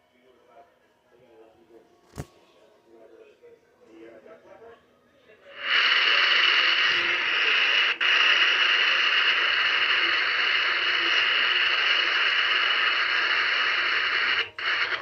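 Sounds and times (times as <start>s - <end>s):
radio static hiss: 5.5s - 15.0s.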